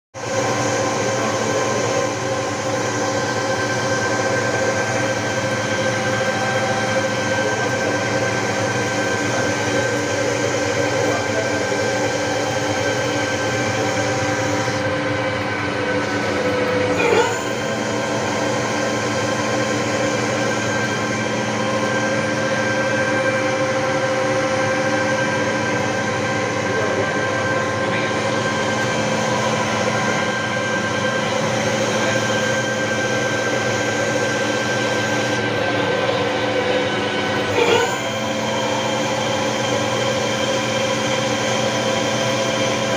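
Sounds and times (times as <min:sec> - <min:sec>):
machine mechanical drone: 0:00.2 - 0:42.9.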